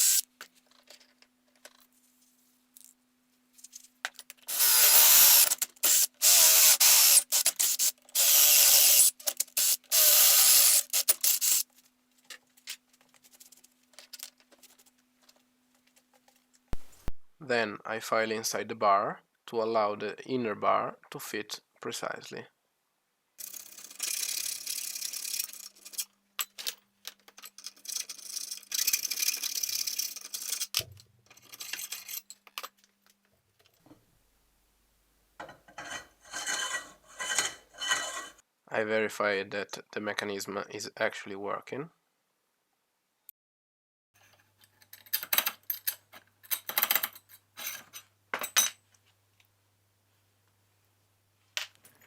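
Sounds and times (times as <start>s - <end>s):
hand file rasping metal: 35.8s - 38.4s.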